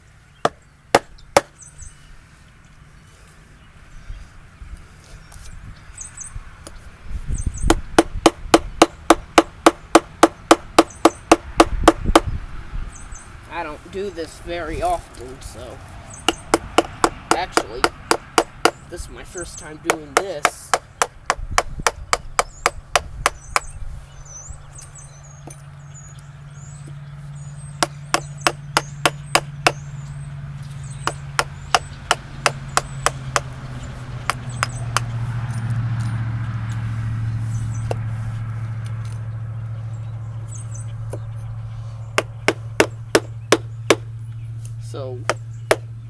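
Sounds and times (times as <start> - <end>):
mallet striking chisel into wood: 0.4 - 1.5, 7.7 - 12.3, 16.3 - 18.8, 19.9 - 23.7, 27.8 - 29.8, 31.0 - 33.5, 34.3 - 35.1, 42.2 - 44.1, 45.2 - 45.9
steady low hum: 6.7 - 46.0.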